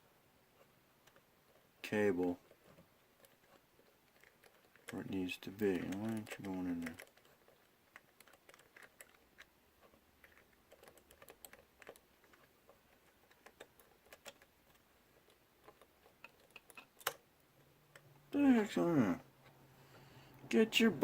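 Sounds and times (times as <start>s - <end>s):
fingers clicking small plastic parts: 1.0s - 1.7s, 2.4s - 18.1s.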